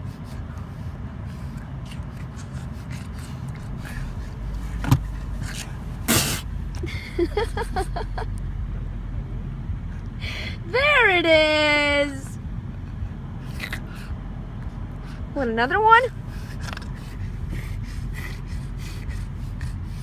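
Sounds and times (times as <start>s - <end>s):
steady low rumble: 0.0s - 20.0s
man sneezing: 6.1s - 6.5s.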